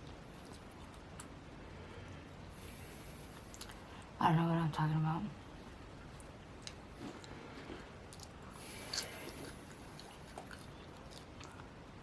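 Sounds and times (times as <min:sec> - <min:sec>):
person chewing food: 0:00.0 - 0:01.4, 0:06.0 - 0:12.0.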